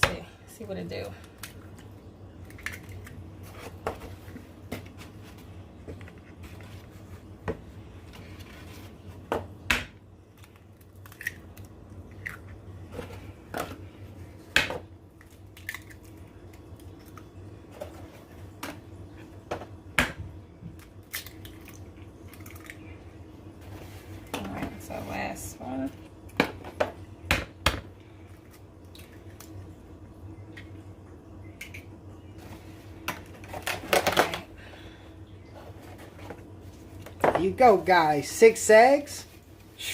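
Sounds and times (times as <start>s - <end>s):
eggs cracking into bowl: 1.3s - 3.2s, 9.7s - 12.6s, 14.6s - 17.3s, 20.0s - 22.9s.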